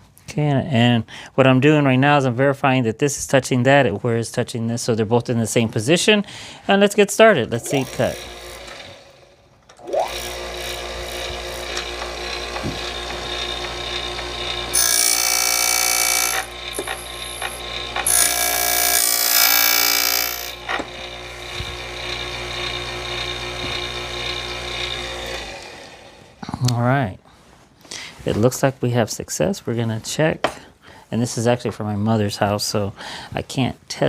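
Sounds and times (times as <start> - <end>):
key-cutting machine motor humming: 7.6 - 25.9
cutter wheel grinding key: 9.8 - 21.0.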